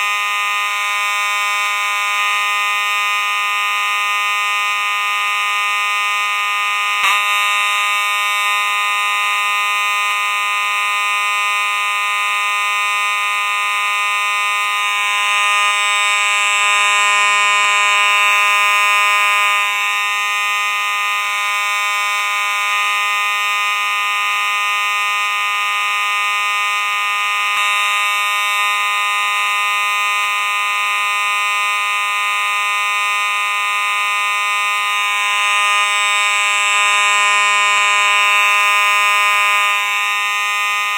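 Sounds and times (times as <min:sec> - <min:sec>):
fire alarm tone: 0:00.0 - 0:40.9
small click: 0:07.0 - 0:07.4.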